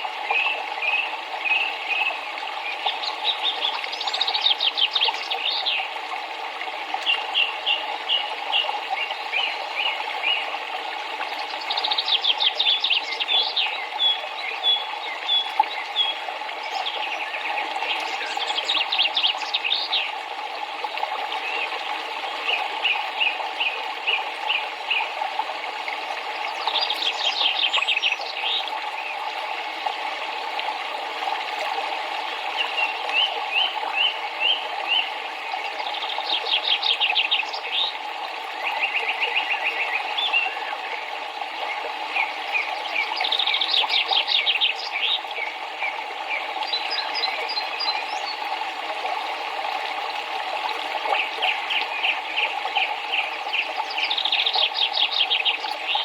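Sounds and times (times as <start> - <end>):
river water flowing: 0.0 - 56.0
birds singing: 11.4 - 20.2, 38.6 - 41.0, 41.6 - 48.5, 51.1 - 56.0.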